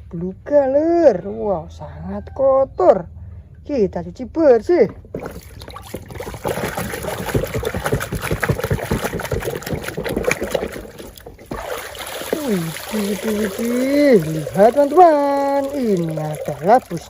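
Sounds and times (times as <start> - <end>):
water splashing and sloshing: 4.9 - 17.0.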